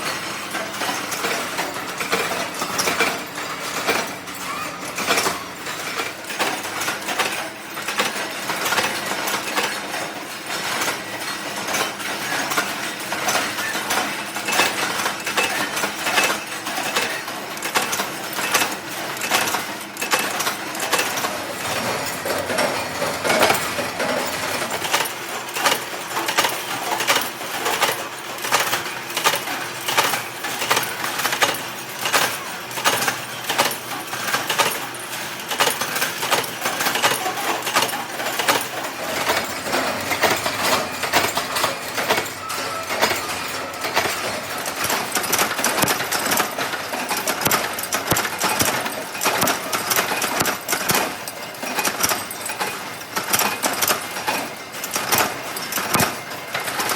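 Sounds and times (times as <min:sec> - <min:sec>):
metal parts clinking and knocking: 0:00.0 - 0:56.9
steady machine hum: 0:17.3 - 0:52.0.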